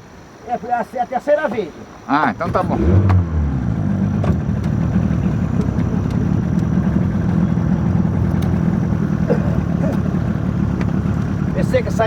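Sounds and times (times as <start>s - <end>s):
small boat motor droning: 2.5s - 12.0s.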